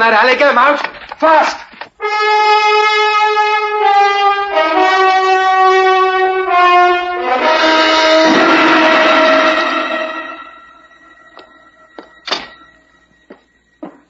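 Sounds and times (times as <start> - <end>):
orchestral brass music: 2.0 - 13.2.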